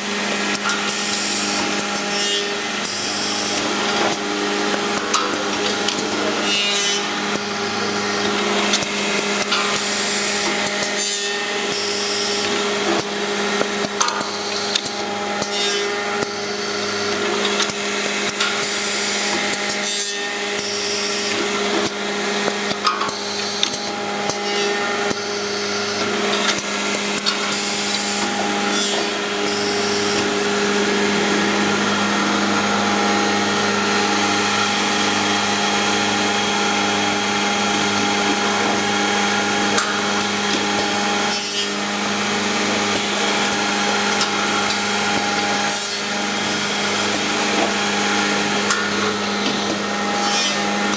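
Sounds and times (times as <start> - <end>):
high-pitched cutter rushing noise: 0.0 - 13.0, 23.2 - 50.9
milling machine motor hum: 0.0 - 50.9.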